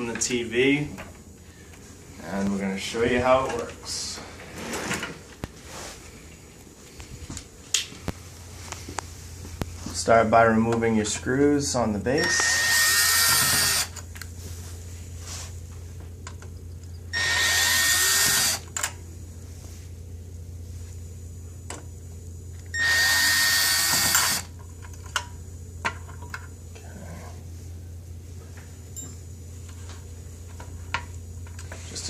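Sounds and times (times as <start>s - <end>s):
drill-driver whining: 12.2s - 14.0s, 17.1s - 18.8s, 22.7s - 24.6s.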